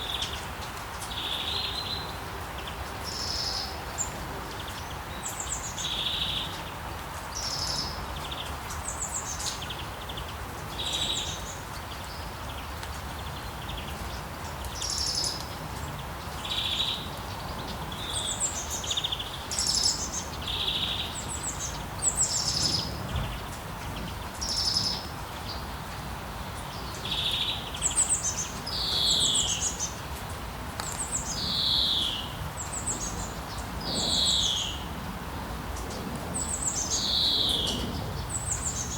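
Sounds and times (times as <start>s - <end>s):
birds chirping and calling: 7.4s - 25.9s, 26.6s - 30.0s, 30.8s - 34.9s, 35.8s - 38.9s.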